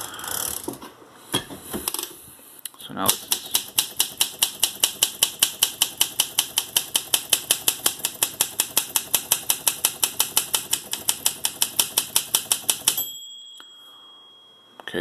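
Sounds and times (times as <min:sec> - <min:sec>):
manual typewriter typing: 0:03.1 - 0:13.1.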